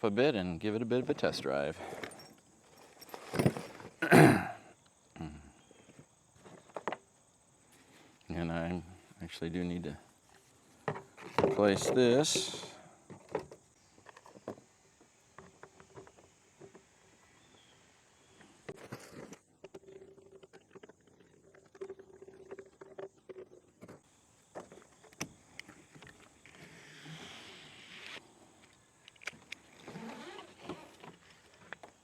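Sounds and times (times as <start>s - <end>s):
objects clicking and knocking: 10.8s - 14.7s.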